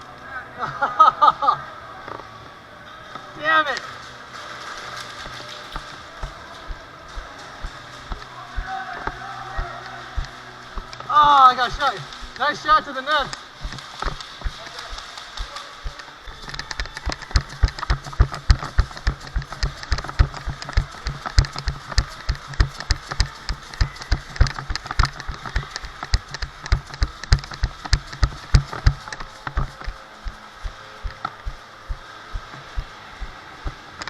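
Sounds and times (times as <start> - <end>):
low hum: 3.9 - 34.0
quick footsteps thumping: 5.7 - 16.0, 17.0 - 33.8.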